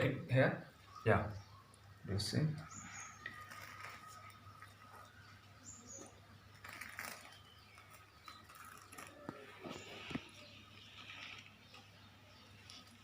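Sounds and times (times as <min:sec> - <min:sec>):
bird chirping: 0:00.0 - 0:13.0.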